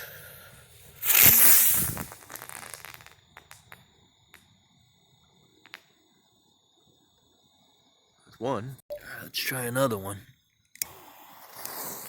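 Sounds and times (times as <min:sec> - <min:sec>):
firework launch hissing: 0:00.0 - 0:03.9, 0:10.8 - 0:12.0
firework sparks crackling: 0:00.6 - 0:06.0, 0:10.8 - 0:12.0
small firework pops: 0:01.0 - 0:04.6, 0:05.4 - 0:06.2, 0:10.8 - 0:12.0.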